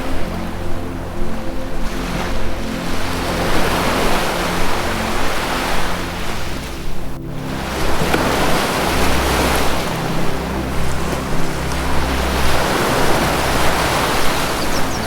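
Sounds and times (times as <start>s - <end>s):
ocean surf washing in: 0.0s - 15.0s
soft ambient music: 0.0s - 15.0s.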